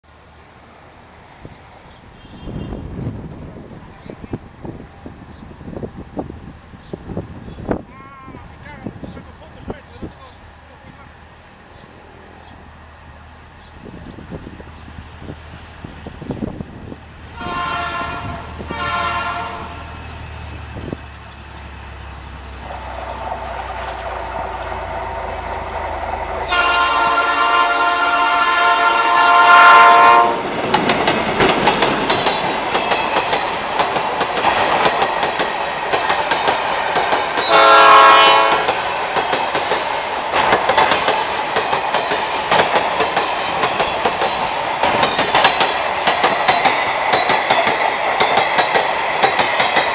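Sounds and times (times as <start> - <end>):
diesel locomotives passing: 0.0 - 49.9
wheels clacking over rail joints: 13.6 - 49.9
train horn blasts: 17.3 - 20.0, 26.4 - 30.4, 37.4 - 38.8.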